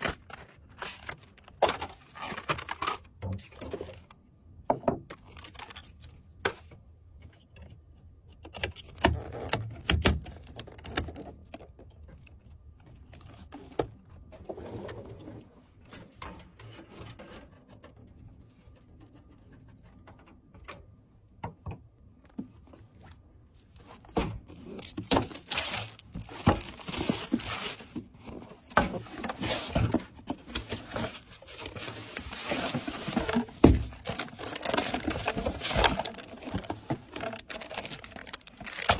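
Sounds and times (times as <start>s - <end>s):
packaging rustling and crinkling: 22.8s - 38.9s.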